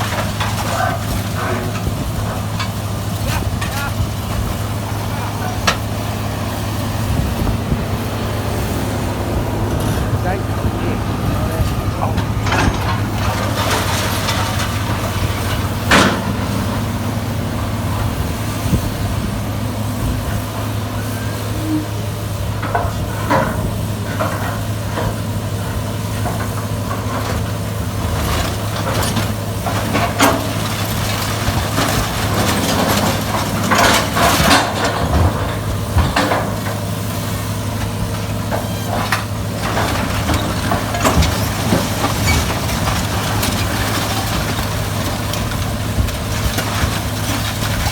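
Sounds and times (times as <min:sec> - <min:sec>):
baler machine drone: 0:03.9 - 0:22.5
metallic clanks and bangs: 0:09.6 - 0:16.8, 0:37.8 - 0:47.9.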